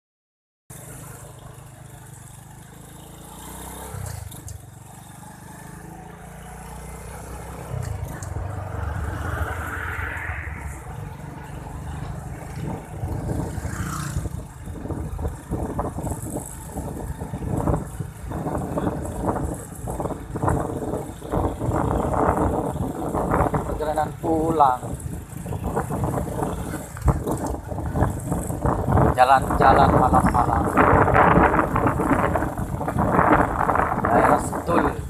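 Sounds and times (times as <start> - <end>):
vehicle engine accelerating: 0.7 - 35.0
wind buffeting microphone: 7.6 - 35.0.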